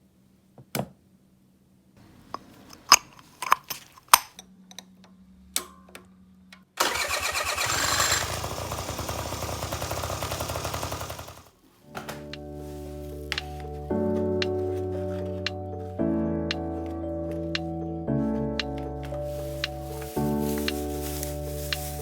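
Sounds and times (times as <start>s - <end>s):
scooter engine running: 6.8s - 11.5s.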